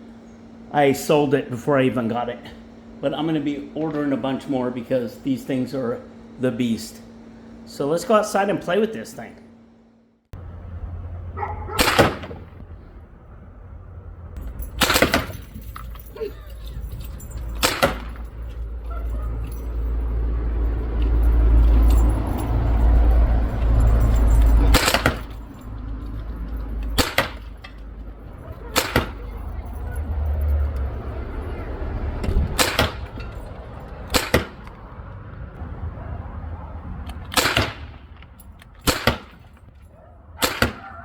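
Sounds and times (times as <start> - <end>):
steady low rumble: 10.3 - 40.4
air launcher shots cracking: 11.6 - 13.0, 14.7 - 15.6, 17.6 - 18.2, 24.6 - 25.4, 27.0 - 27.8, 28.7 - 29.3, 32.2 - 34.8, 37.2 - 39.5, 40.4 - 40.9.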